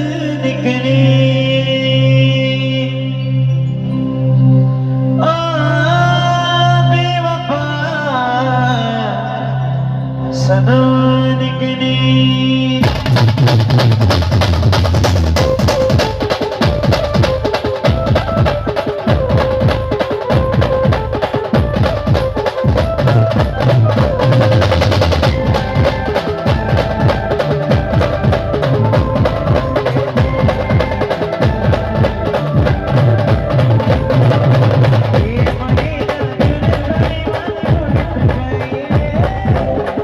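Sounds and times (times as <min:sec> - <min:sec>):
sustained melody line: 0:00.0 - 0:40.0
fast dense drumming: 0:12.8 - 0:40.0.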